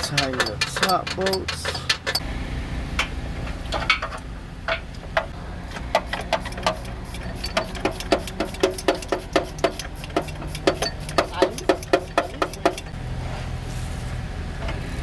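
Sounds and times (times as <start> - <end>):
ratchet wrench clicking: 0.0 - 2.2, 5.7 - 13.0.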